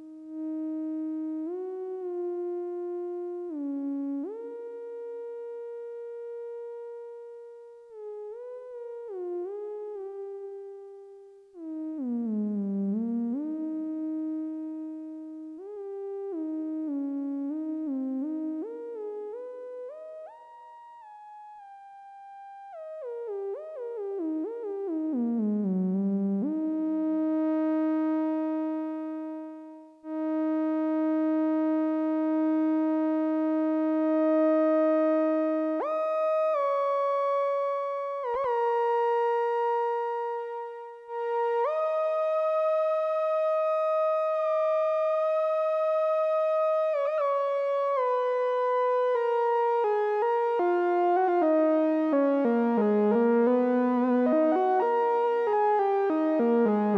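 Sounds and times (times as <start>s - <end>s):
synthesizer lead melody: 50.4s - 56.9s.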